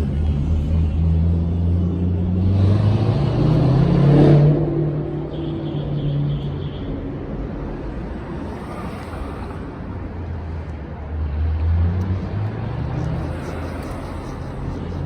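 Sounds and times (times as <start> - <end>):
road vehicle rumble: 0.0 - 15.0.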